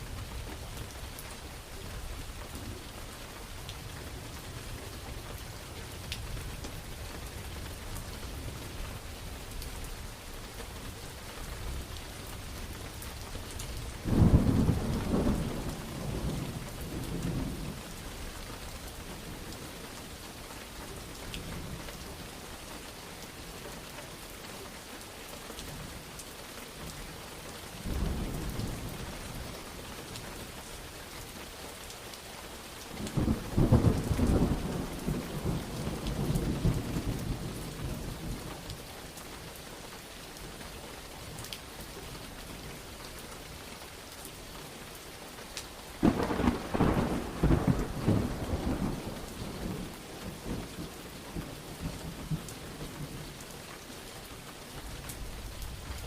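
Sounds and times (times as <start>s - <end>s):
steady rain: 0.0s - 56.0s
thunder rolling with cracks: 46.0s - 50.6s.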